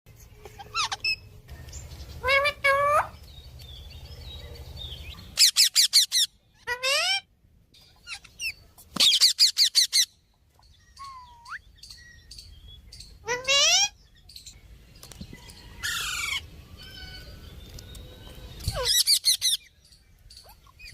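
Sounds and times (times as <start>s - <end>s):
parrot calling: 0.4s - 1.4s, 2.2s - 3.2s, 5.2s - 7.3s, 13.1s - 14.0s.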